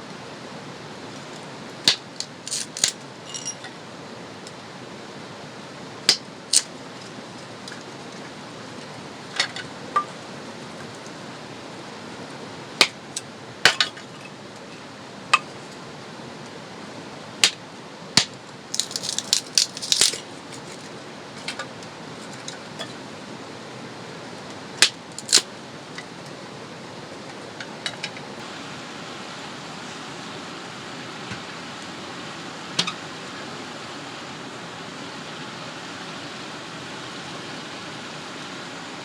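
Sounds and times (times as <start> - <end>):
cookware clinking: 3.3 - 3.7.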